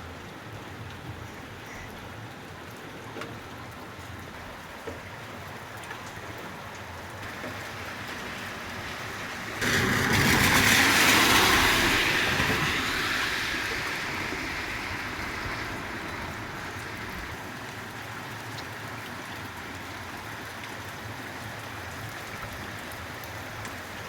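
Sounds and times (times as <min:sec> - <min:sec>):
steady rain: 0:00.0 - 0:24.0
vehicle passing: 0:07.6 - 0:17.4.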